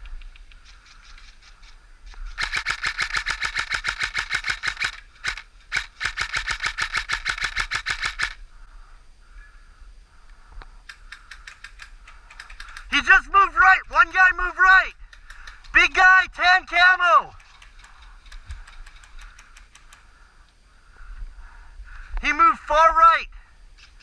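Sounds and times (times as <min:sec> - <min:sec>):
electric rifle firing full auto: 0:02.4 - 0:08.4
fainter gun bursts: 0:02.4 - 0:08.4.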